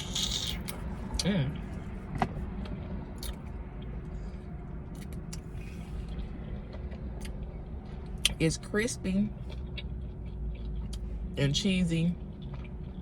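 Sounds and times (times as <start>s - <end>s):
chewing crispy food: 9.4s - 11.4s, 12.1s - 13.0s.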